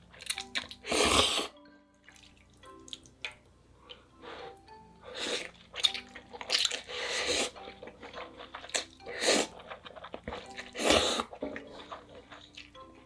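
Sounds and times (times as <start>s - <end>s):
person slurping noodles: 0.8s - 1.5s, 6.8s - 7.7s, 8.7s - 12.0s
chewing and mouth clicks: 5.3s - 12.8s.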